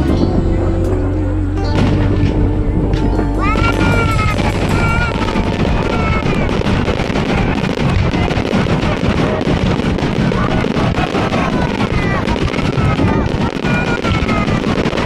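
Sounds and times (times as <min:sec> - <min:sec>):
fireworks crackling and popping: 0:05.6 - 0:15.0.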